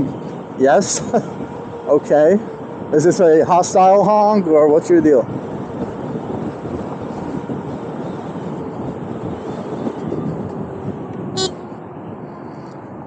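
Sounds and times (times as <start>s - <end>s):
street traffic: 0.0s - 13.0s
car horn beep: 11.4s - 11.6s.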